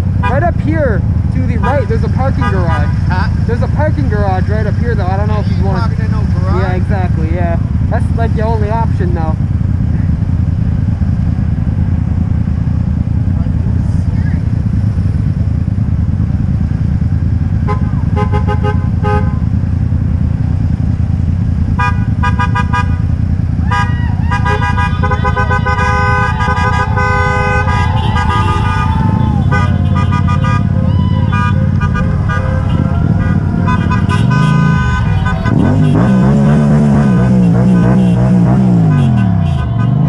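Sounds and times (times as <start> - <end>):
engine and traffic rumble: 0.0 - 40.0
vehicle horns honking: 0.1 - 0.6, 1.4 - 4.4, 17.6 - 19.6, 21.7 - 40.0.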